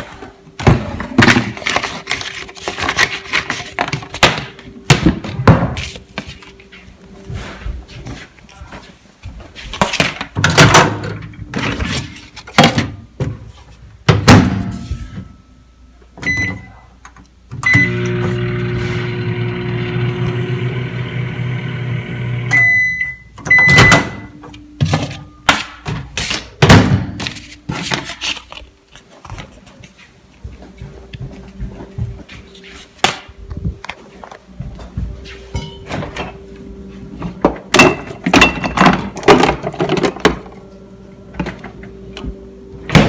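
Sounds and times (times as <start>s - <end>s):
long microwave beep: 16.2s - 16.8s, 17.6s - 24.4s
microwave oven humming: 17.5s - 24.4s
short keypad beeps: 22.5s - 24.3s.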